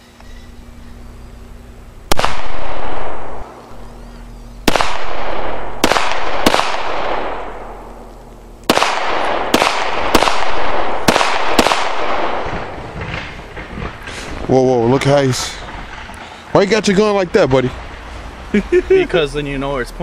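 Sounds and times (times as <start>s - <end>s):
pistol shots echoing: 2.1s - 3.7s, 4.6s - 8.0s, 8.7s - 12.9s.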